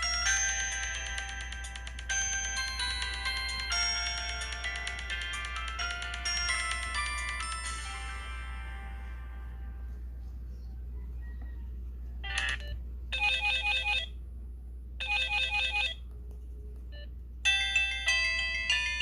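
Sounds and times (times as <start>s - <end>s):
melodic ringtone: 0.0s - 10.1s, 12.2s - 14.1s, 15.0s - 16.0s, 17.4s - 19.0s
low steady hum: 0.0s - 19.0s.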